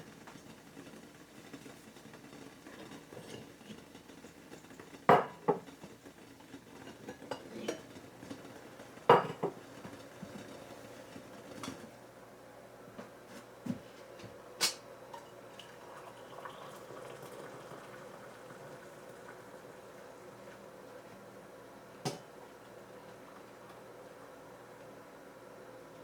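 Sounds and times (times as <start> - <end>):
dishes and cutlery clinking: 6.7 - 8.4, 9.1 - 9.6.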